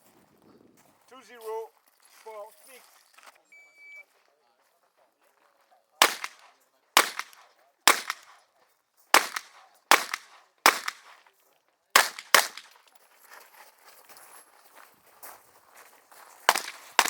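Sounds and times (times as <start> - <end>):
revolver shots with echo: 6.0 - 6.4, 7.0 - 8.3.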